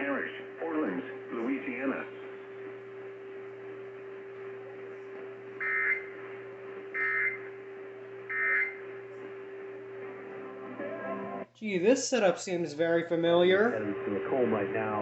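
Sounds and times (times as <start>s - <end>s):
warbling data tones: 5.6s - 6.1s, 6.9s - 7.5s, 8.3s - 8.8s.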